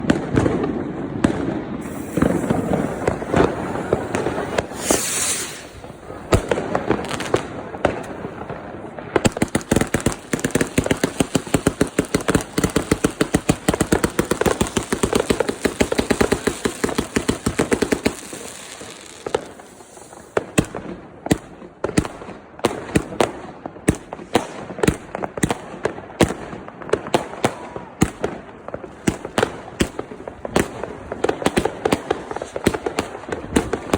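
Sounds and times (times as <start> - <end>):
fireworks crackling and banging: 0.0 - 33.9
short high hiss: 1.8 - 6.1, 18.1 - 20.4.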